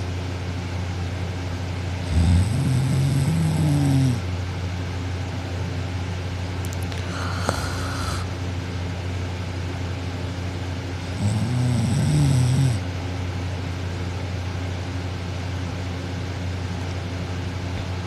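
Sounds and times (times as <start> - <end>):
steady low hum: 0.0 - 18.0
girl snoring: 2.0 - 4.2, 7.0 - 8.3, 11.1 - 12.8.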